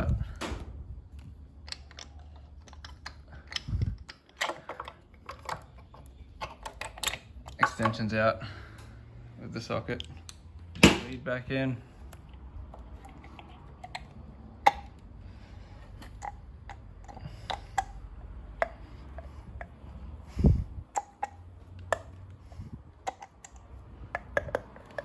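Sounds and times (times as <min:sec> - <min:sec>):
small clicks and knocks: 0:23.0 - 0:25.0.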